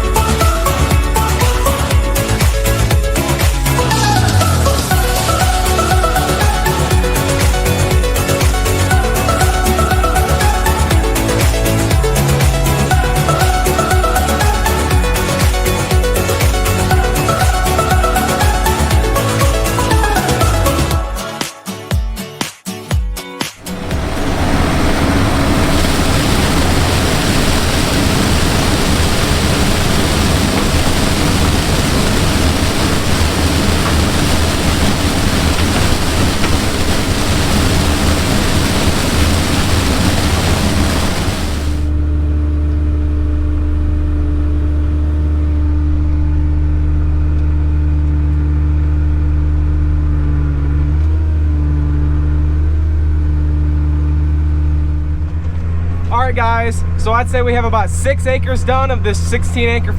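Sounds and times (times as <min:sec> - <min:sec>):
combine harvester engine hum: 0:23.6 - 0:41.9
machinery hiss: 0:23.6 - 0:41.9.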